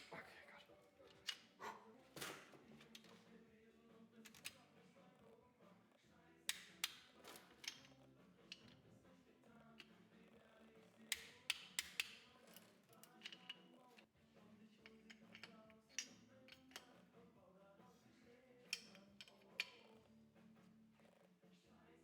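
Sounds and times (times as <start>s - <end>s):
faint background music: 0.0s - 22.0s
hand tools clicking and knocking: 6.5s - 8.8s, 11.1s - 14.1s, 14.8s - 17.0s, 18.6s - 20.0s.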